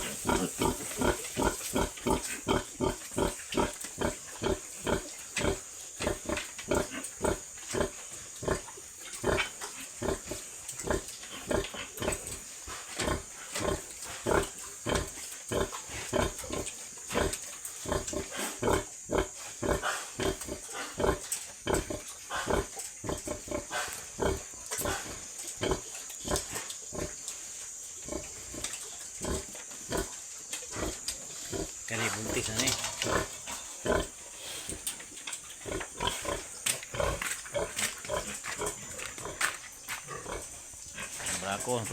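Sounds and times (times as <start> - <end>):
pigs grunting: 0.0 - 27.2, 28.0 - 41.9
high-pitched hiss: 0.0 - 41.9.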